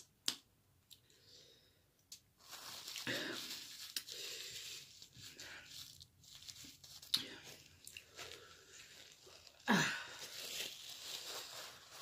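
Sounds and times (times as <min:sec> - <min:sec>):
close rustling and crinkling: 0:02.4 - 0:12.0.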